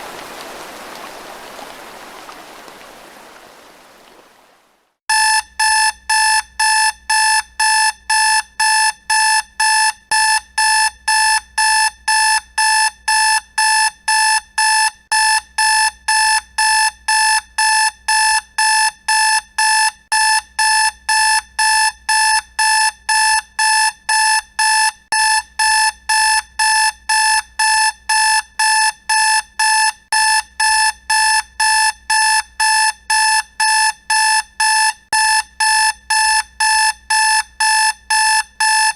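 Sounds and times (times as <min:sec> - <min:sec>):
alarm clock beeping: 0:05.1 - 0:38.9.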